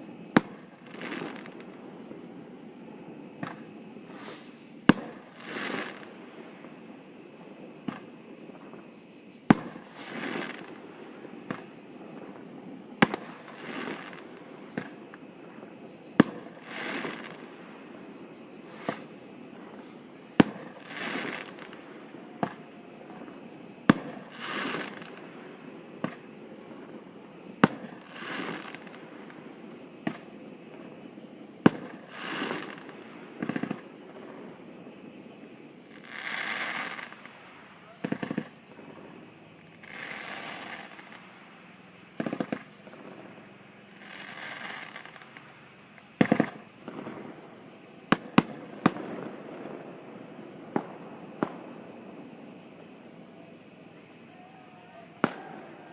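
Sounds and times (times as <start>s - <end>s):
fireworks banging: 3.1s - 31.0s, 31.6s - 34.6s, 35.9s - 39.2s, 42.2s - 43.4s, 44.0s - 52.3s, 55.1s - 55.9s.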